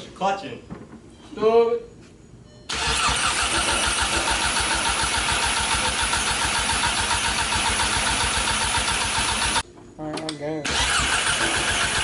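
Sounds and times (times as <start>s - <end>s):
car engine cranking on starter: 2.7s - 9.6s, 10.7s - 12.0s.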